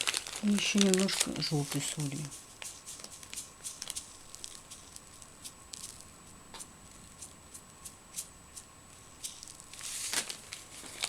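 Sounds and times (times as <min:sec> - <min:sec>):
salt grains sprinkling onto bottle: 0:00.0 - 0:06.1, 0:07.1 - 0:11.0.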